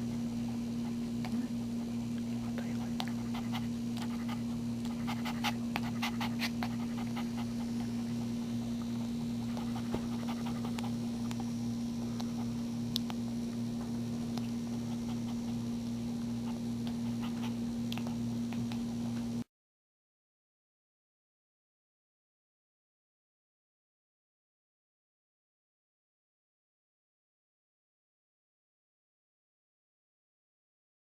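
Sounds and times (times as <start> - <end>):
dog panting: 0.0 - 11.6, 12.2 - 12.7, 14.2 - 19.0
low electrical hum: 0.0 - 19.5.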